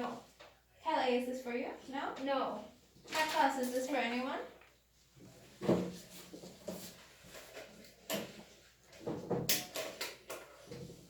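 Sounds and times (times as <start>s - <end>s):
knocks and clicks of objects handled: 5.6s - 11.0s.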